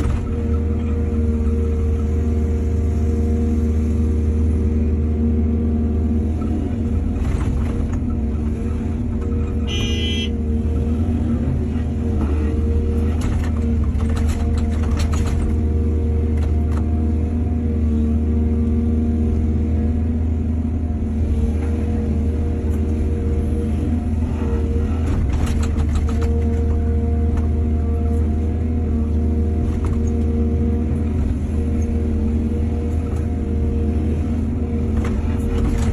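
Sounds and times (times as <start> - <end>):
excavator diesel engine running: 0.0 - 35.9.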